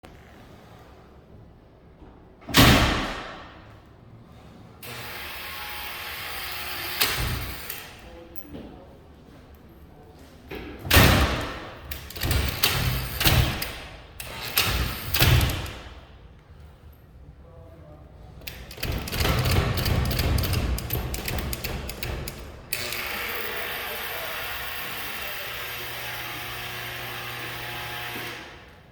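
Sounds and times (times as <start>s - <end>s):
heavy door slamming: 2.4s - 3.7s, 10.8s - 16.0s, 18.6s - 22.7s
rapid ratcheting clicks: 18.5s - 23.1s.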